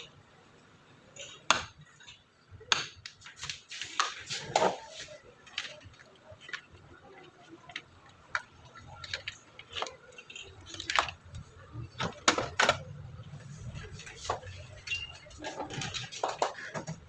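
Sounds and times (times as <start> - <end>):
small hard parts clicking: 5.4 - 13.0.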